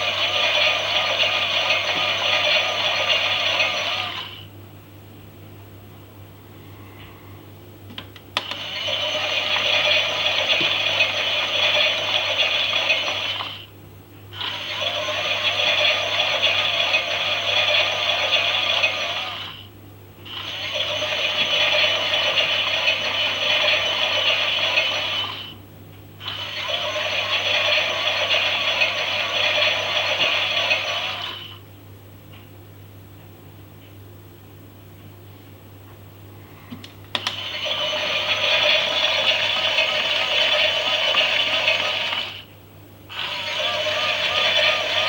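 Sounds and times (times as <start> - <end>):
toy washing machine motor rattling: 0.0 - 4.4, 8.4 - 13.6, 14.4 - 19.6, 20.3 - 25.6, 26.2 - 31.6, 37.1 - 42.5, 43.1 - 45.0.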